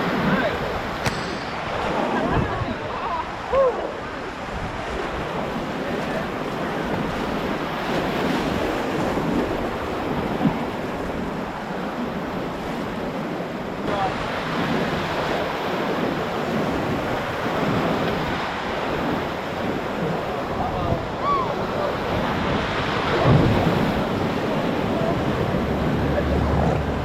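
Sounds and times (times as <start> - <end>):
whitewater rushing: 0.0 - 10.0, 18.4 - 27.0
wind noise on microphone: 0.0 - 27.0
sharp knock: 1.0 - 2.1.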